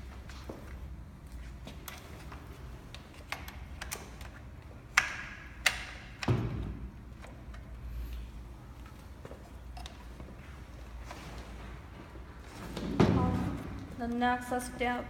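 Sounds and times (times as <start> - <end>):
scooter parts clicking and tapping: 1.7 - 7.8.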